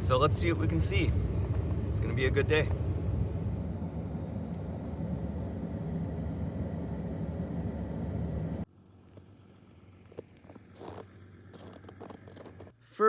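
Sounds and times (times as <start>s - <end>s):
car driving rumble from cabin: 0.0s - 12.7s.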